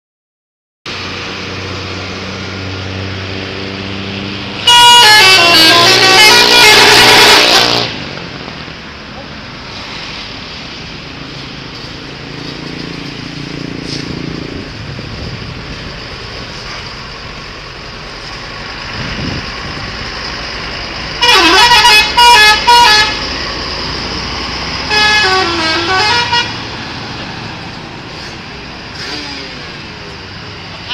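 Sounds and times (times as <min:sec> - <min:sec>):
traffic noise: 0:00.9 - 0:30.9
musical bus horn: 0:04.6 - 0:08.1, 0:21.2 - 0:23.2, 0:24.8 - 0:26.7.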